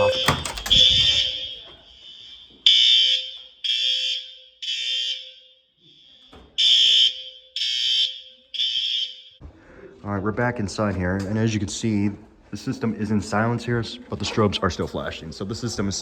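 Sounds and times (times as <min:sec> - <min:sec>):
fire alarm blasts: 0:00.0 - 0:09.4.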